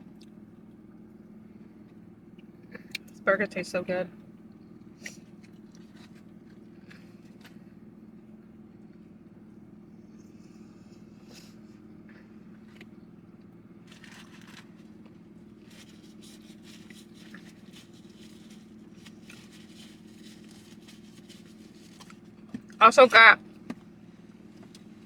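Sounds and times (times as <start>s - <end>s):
food packaging crinkling: 13.9s - 22.3s.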